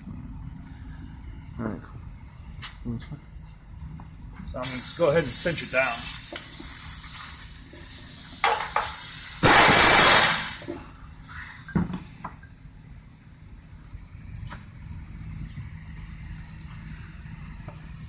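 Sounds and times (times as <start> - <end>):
rush of hiss-like noise: 4.6 - 10.8
hand ratchet clicking: 8.4 - 9.8.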